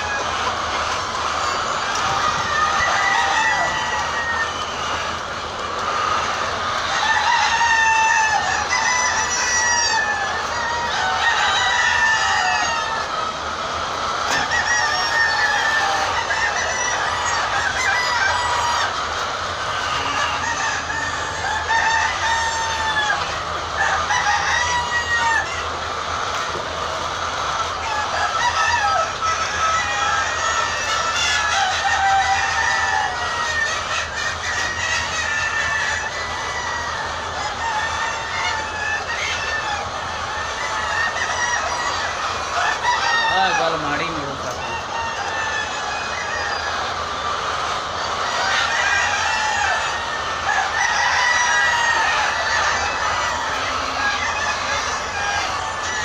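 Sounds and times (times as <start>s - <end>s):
hens clucking: 0.0s - 56.0s.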